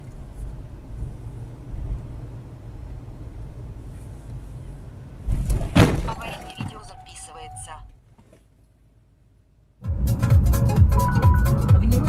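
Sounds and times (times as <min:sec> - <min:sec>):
car engine and road rumble: 0:00.0 - 0:12.0
low thump: 0:05.3 - 0:06.9.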